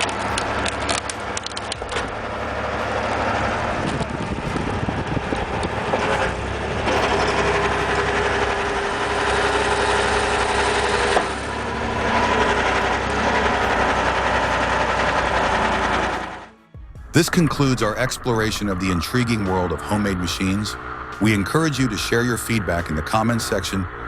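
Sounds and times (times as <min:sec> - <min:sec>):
clicks and cracks: 0:00.0 - 0:02.2
machine engine running: 0:00.0 - 0:16.6, 0:17.3 - 0:24.0
high steady whine: 0:00.0 - 0:24.0.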